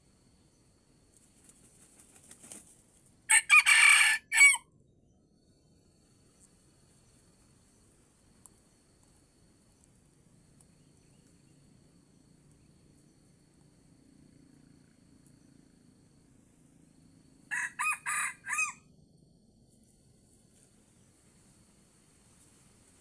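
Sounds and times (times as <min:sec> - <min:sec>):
rooster crowing: 0:03.3 - 0:04.7, 0:17.5 - 0:18.9.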